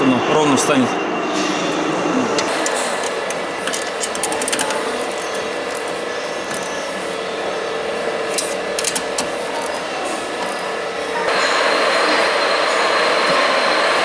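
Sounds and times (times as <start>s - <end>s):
workshop hum: 0.0s - 14.0s
ratchet clicking: 2.4s - 6.8s, 8.3s - 9.8s.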